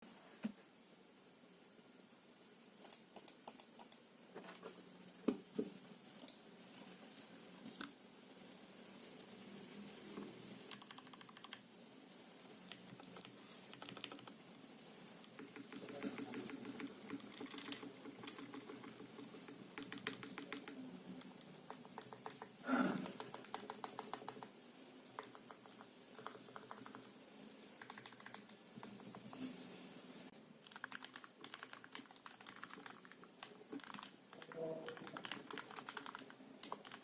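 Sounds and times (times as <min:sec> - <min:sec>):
mechanical keyboard typing: 0:02.8 - 0:04.0, 0:10.7 - 0:11.7, 0:12.7 - 0:14.4, 0:15.2 - 0:24.5, 0:25.2 - 0:27.2, 0:27.8 - 0:29.3, 0:30.6 - 0:37.0.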